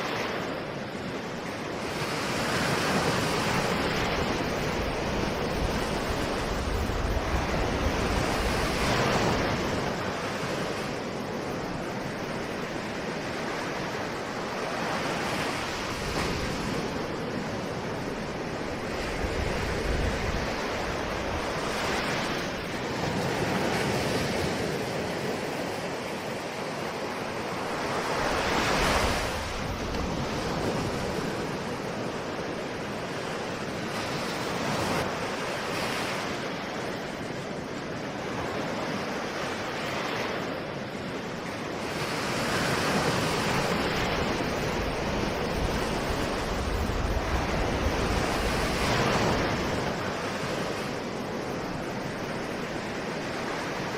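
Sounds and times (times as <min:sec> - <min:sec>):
ocean waves breaking on shore: 0:00.0 - 0:53.9.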